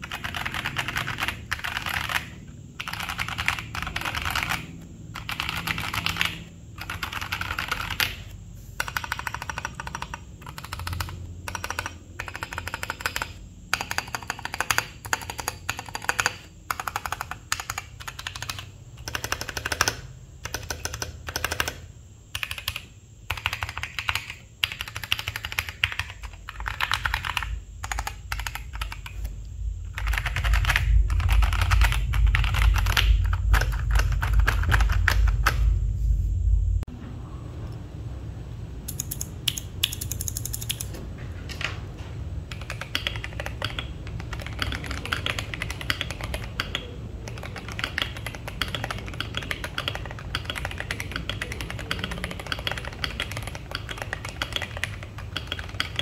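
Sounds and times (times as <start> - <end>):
mechanical keyboard typing: 0.0 - 29.3, 29.9 - 35.7, 38.9 - 40.9, 42.5 - 56.0
low rumble: 28.5 - 38.9.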